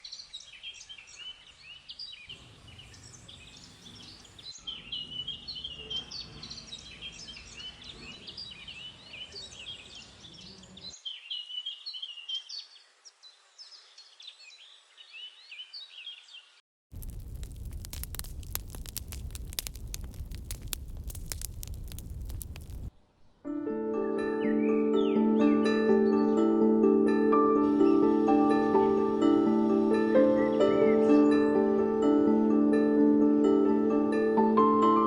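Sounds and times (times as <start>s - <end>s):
birds chirping and singing: 0.0s - 16.5s
low background rumble: 17.0s - 22.9s.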